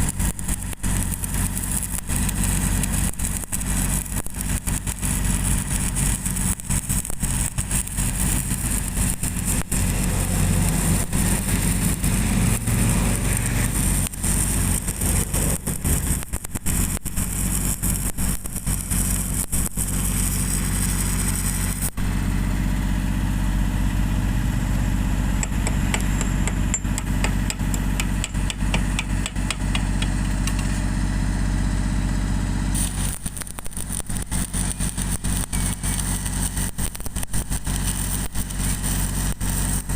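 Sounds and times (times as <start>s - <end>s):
engine droning: 0.0s - 39.9s
welding arc crackling and hissing: 0.0s - 39.9s.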